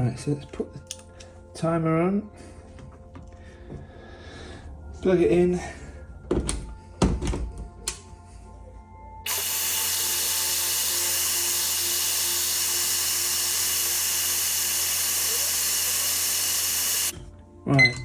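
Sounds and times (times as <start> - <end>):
hair dryer rushing air: 9.3 - 17.2.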